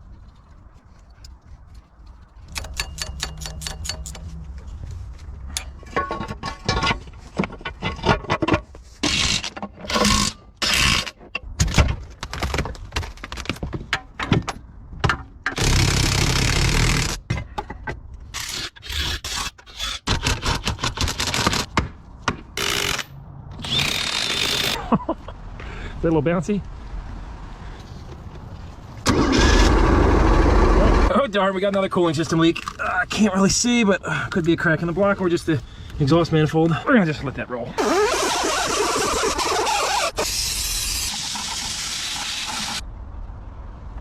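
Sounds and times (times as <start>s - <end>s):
hand tool scraping and knocking: 2.5s - 4.4s
hissing bursts: 37.8s - 42.8s.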